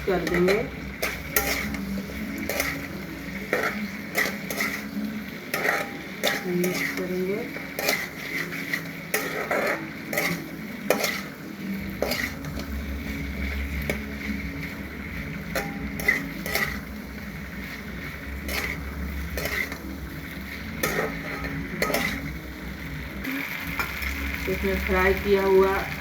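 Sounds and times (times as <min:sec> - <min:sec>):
faint sizzle: 0:00.0 - 0:26.0
spoon scraping a pan: 0:00.0 - 0:26.0
steady low hum: 0:11.4 - 0:26.0.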